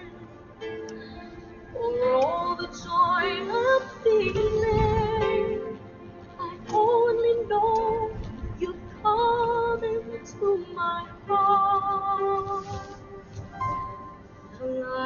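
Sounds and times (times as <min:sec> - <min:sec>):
woman singing long held notes: 0:01.6 - 0:13.3, 0:14.6 - 0:15.0.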